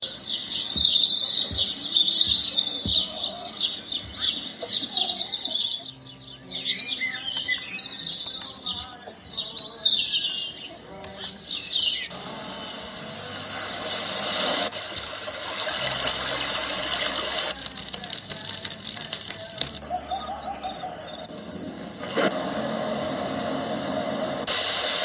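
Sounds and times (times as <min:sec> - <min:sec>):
small birds chirping: 0:00.0 - 0:13.4, 0:15.6 - 0:21.3.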